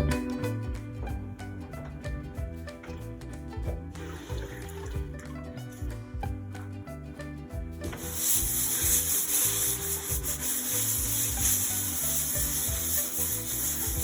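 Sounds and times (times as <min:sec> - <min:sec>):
background music with bass line: 0:00.0 - 0:14.0
sanding scratchy rubbing: 0:08.0 - 0:14.0.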